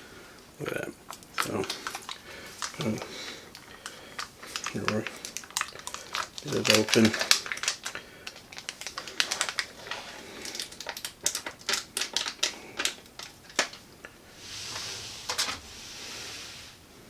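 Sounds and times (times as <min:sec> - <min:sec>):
soft hissing rustle: 0:13.8 - 0:17.0.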